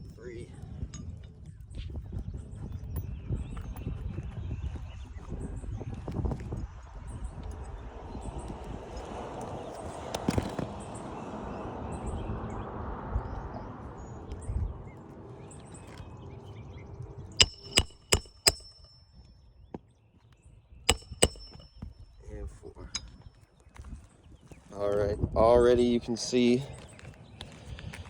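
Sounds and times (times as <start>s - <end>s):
hammer striking metal tool: 17.4s - 19.1s, 20.9s - 21.9s.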